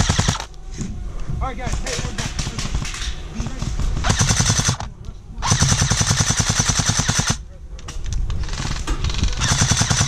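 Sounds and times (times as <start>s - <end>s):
airsoft gun full-auto bursts: 0.0s - 0.5s, 4.0s - 7.4s, 9.4s - 10.0s.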